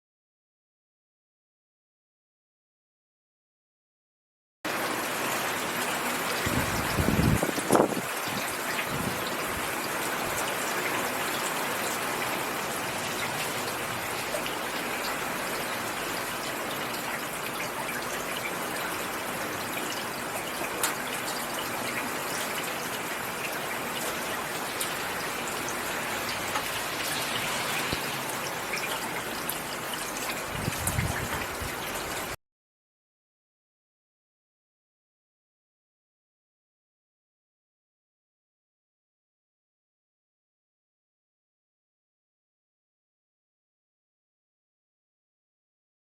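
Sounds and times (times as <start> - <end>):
rain falling on leaves: 4.7 - 32.4.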